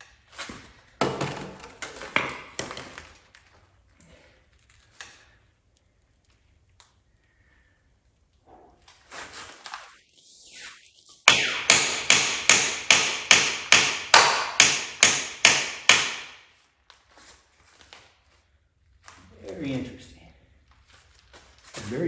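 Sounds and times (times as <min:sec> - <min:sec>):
hammer striking metal bolt: 0:11.3 - 0:16.4.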